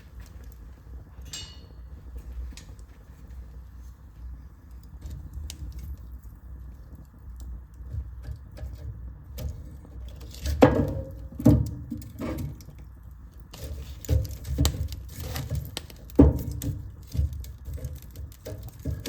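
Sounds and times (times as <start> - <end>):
low rumble of flames: 0.0 - 19.0
fire pops and snaps: 4.2 - 19.0.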